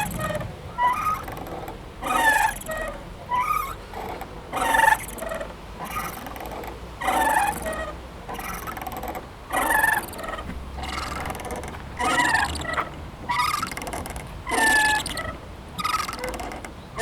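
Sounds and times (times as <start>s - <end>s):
playground swing squeaking: 0.0s - 17.0s.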